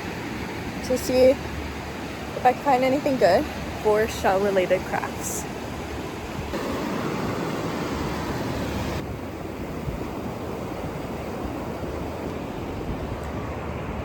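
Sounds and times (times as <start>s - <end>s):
ocean surf washing on shore: 0.0s - 14.0s.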